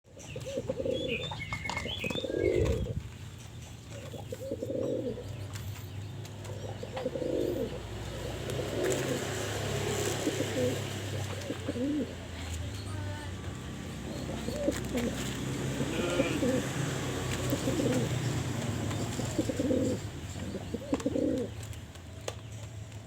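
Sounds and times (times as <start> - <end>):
pigeon cooing: 0.2 - 3.0, 4.0 - 5.4, 6.4 - 12.4, 13.8 - 21.7.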